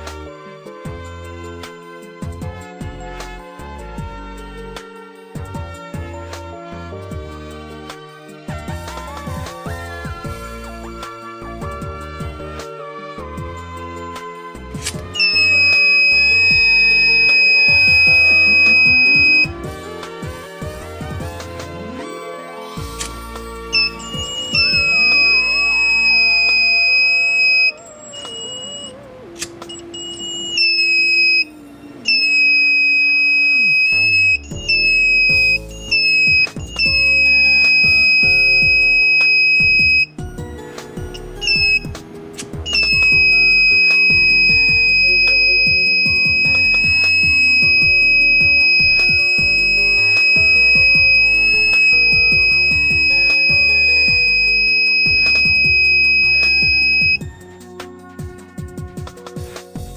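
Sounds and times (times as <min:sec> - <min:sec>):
background music: 0:00.0 - 0:59.9
alarm buzzer high-pitched beep: 0:14.8 - 0:19.5, 0:23.0 - 0:40.2, 0:41.1 - 0:57.3.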